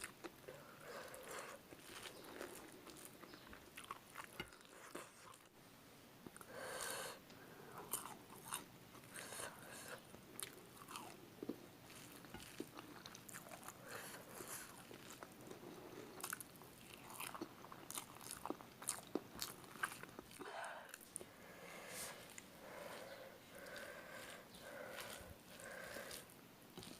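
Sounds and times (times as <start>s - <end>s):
person chewing and biting: 0.0s - 5.5s, 7.8s - 9.2s, 10.4s - 21.2s, 22.2s - 26.9s.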